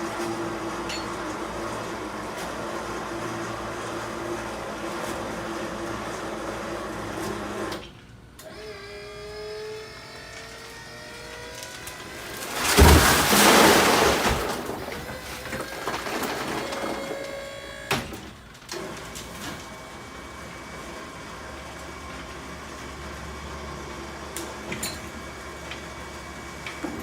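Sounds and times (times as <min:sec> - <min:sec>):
gravel pouring out: 0:11.8 - 0:17.5
lift motor whining: 0:14.0 - 0:20.4.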